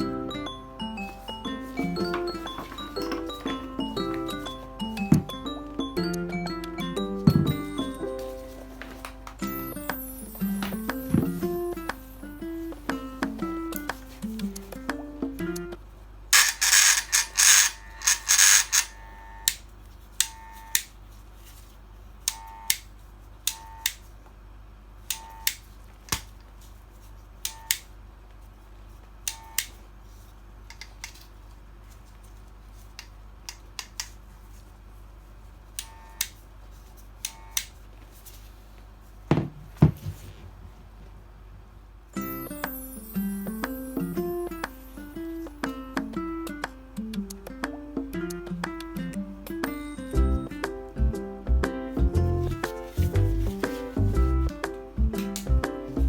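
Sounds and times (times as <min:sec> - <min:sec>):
cordless power tool running: 0:16.4 - 0:19.4
trigger clicks and blips: 0:16.4 - 0:19.6.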